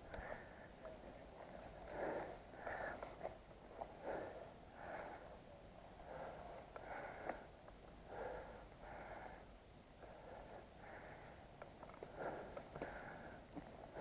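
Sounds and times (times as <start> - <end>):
person breathing hard: 1.9 - 3.2, 3.8 - 5.4, 6.0 - 11.5, 12.1 - 14.0
faint clicks: 6.7 - 7.8.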